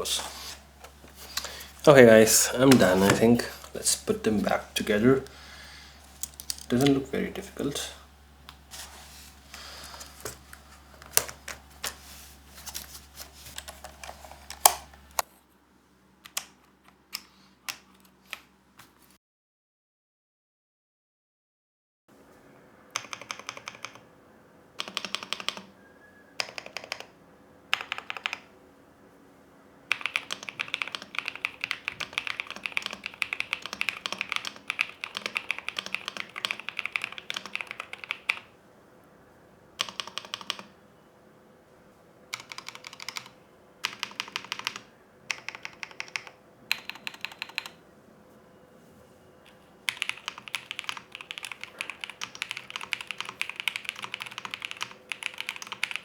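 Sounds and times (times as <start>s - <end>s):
fast typing on mechanical keyboard: 22.9s - 24.0s, 24.8s - 25.7s, 26.4s - 28.5s, 29.9s - 38.5s, 39.8s - 40.7s, 42.3s - 47.8s, 49.9s - 56.0s.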